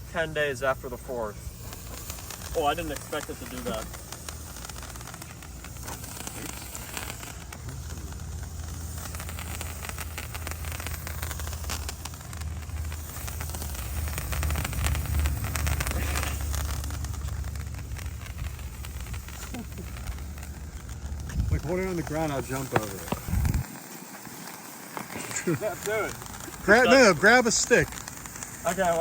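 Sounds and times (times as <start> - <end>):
firework hissing and crackling: 0.0 - 29.0
low rumble: 0.8 - 23.7.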